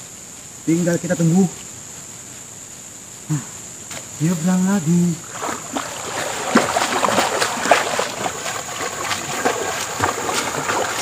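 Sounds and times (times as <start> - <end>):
water splashing from wading: 5.2 - 11.0.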